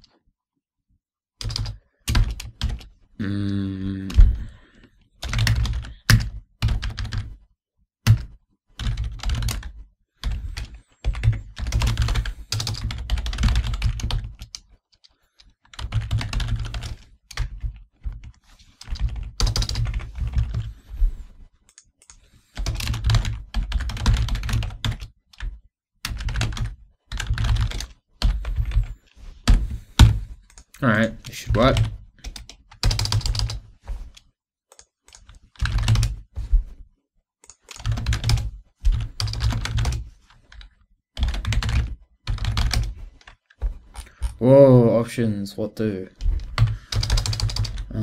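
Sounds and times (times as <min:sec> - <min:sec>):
typing on keyboard: 0:01.4 - 0:02.9, 0:05.2 - 0:07.4, 0:08.0 - 0:20.7, 0:21.7 - 0:28.9, 0:29.5 - 0:33.6, 0:34.7 - 0:36.2, 0:37.4 - 0:43.4, 0:46.4 - 0:48.0.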